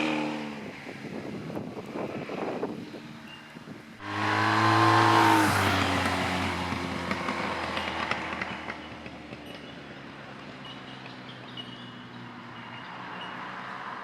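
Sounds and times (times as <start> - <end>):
motorcycle passing by: 0.0 - 1.2, 4.0 - 14.0.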